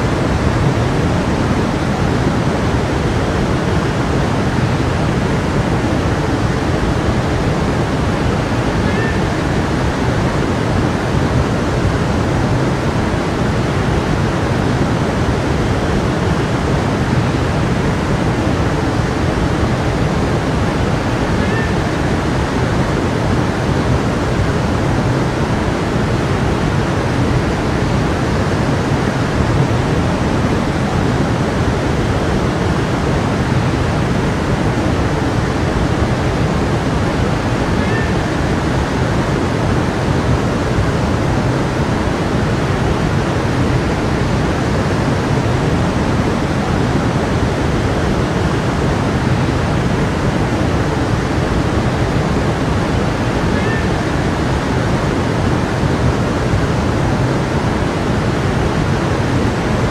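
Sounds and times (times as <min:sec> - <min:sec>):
stream water rushing: 0:00.0 - 0:59.9.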